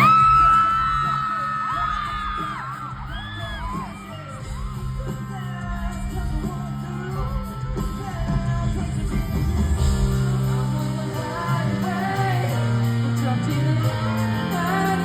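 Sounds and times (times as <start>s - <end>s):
people yelling: 0.0s - 5.9s
live rock band playing: 0.0s - 15.0s
person singing: 0.0s - 15.0s.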